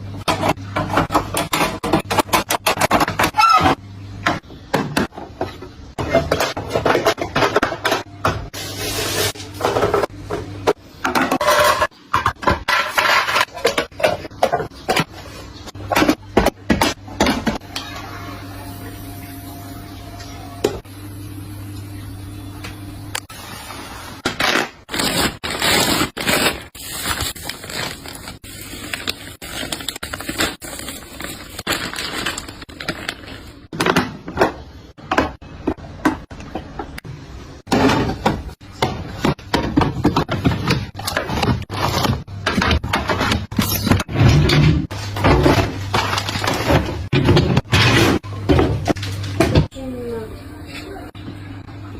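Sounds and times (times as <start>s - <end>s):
packaging rustling: 24.4s - 33.6s.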